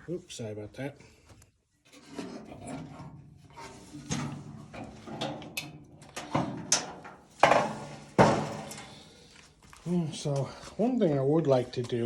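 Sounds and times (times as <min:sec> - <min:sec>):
metal heater parts rattling: 0:01.9 - 0:09.2.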